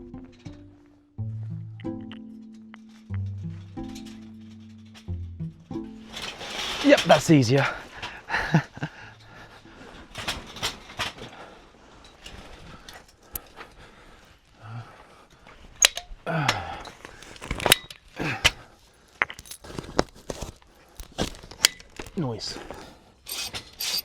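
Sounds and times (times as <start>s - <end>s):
rustling: 6.0s - 16.2s, 16.9s - 24.0s.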